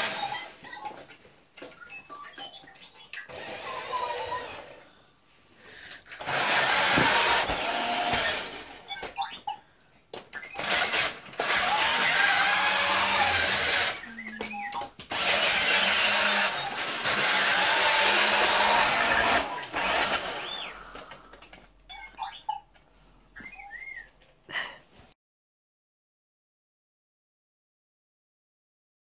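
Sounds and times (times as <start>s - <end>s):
toy electric motors whirring: 0.0s - 1.0s, 3.1s - 4.8s, 5.9s - 9.2s, 10.4s - 21.6s
electronic beeps and whistles: 23.4s - 24.1s.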